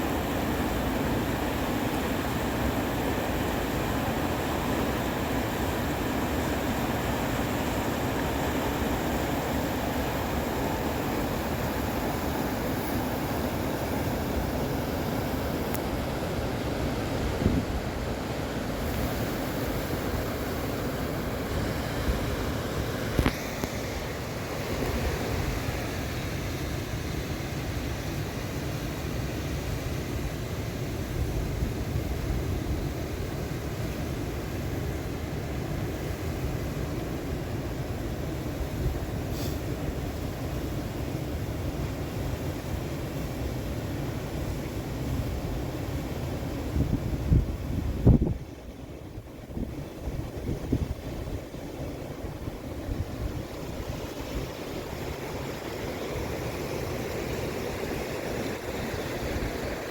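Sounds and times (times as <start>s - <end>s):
river water rushing: 0.0s - 30.0s, 48.9s - 59.9s.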